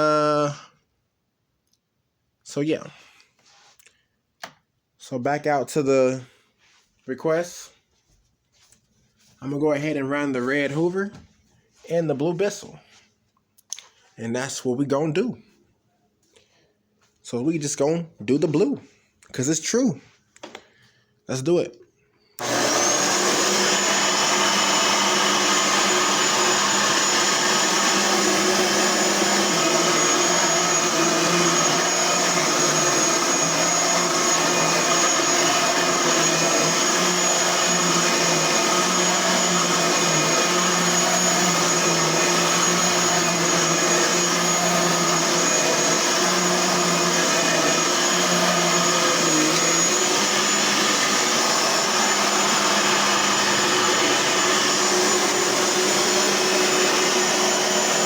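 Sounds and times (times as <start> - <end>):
vacuum cleaner motor whine: 22.4 - 58.0.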